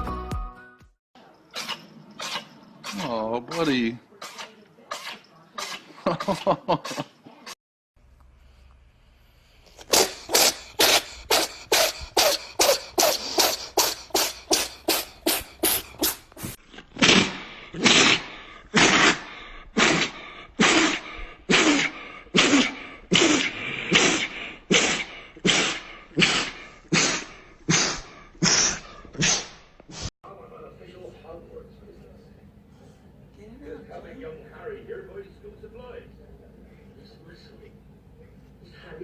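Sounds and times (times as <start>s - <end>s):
cat sneezing: 4.2s - 7.1s, 9.8s - 18.2s, 18.8s - 19.2s, 19.8s - 30.1s.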